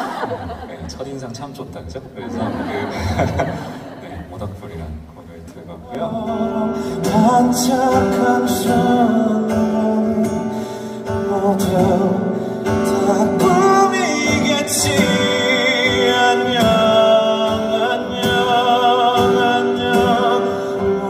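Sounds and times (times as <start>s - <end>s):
guitar accompaniment: 2.6s - 21.0s
man singing: 5.8s - 21.0s.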